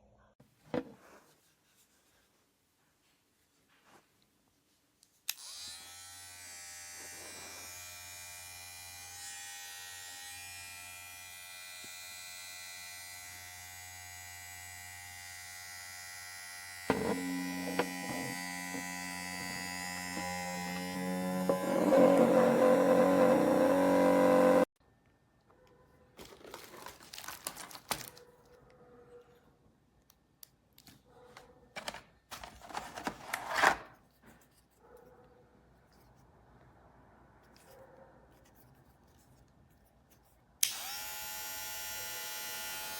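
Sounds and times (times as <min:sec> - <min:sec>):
electric hair clipper buzzing: 0:05.3 - 0:24.7, 0:40.6 - 0:42.9.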